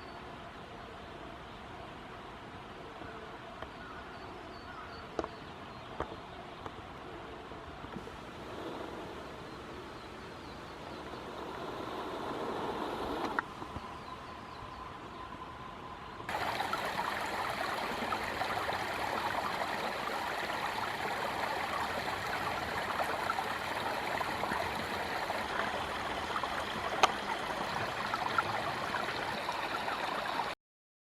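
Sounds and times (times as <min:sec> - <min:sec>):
stream babbling over rocks: 0:08.0 - 0:13.4, 0:16.3 - 0:30.6.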